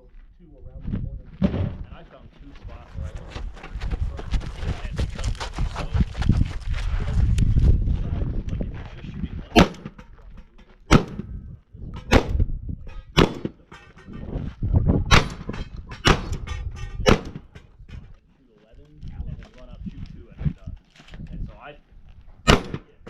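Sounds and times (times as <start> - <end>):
shotgun shots with echo: 9.5 - 10.0, 10.9 - 11.3, 12.0 - 13.9, 15.1 - 17.5, 22.5 - 23.0.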